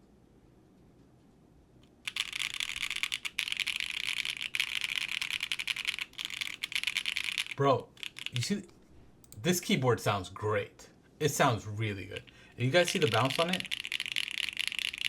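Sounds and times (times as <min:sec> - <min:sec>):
fast typing on mechanical keyboard: 0:02.1 - 0:08.6, 0:12.1 - 0:15.0.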